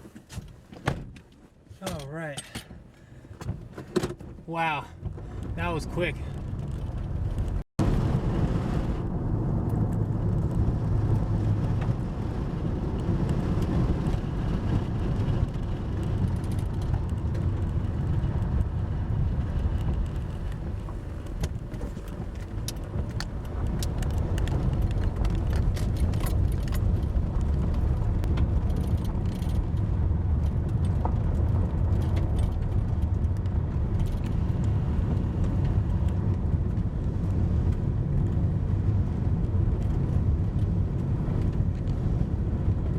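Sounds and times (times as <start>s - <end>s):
road and engine rumble in car: 0.0s - 42.9s
light clicks and ticks: 19.3s - 29.8s.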